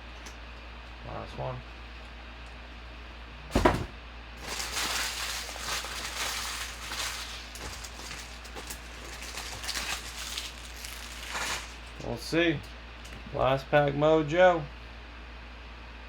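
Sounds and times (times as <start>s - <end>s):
thump on table: 3.5s - 4.0s
foil wrapper tearing and crinkling: 4.4s - 12.1s.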